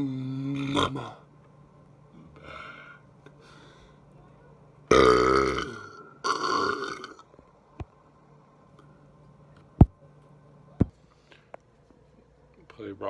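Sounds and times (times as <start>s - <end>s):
person burping: 0.0s - 1.2s, 4.9s - 7.2s.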